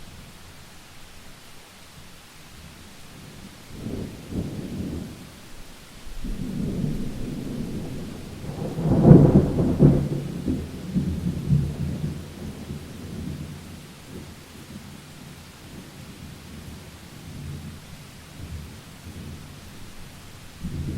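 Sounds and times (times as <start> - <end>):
faint steady hiss: 0.0 - 20.9
thunder rumbling: 6.1 - 14.2, 19.1 - 20.9.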